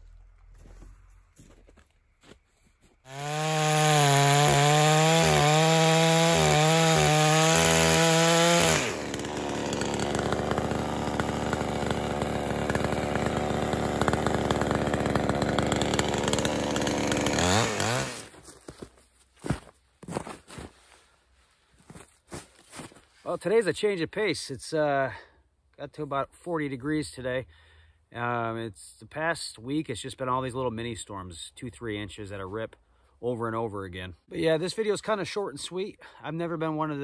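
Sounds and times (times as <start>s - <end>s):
chainsaw cutting log: 3.0s - 18.4s.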